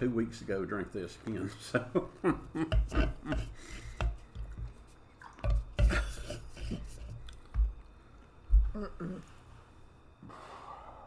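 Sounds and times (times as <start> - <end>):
liquid dripping: 3.9 - 7.8.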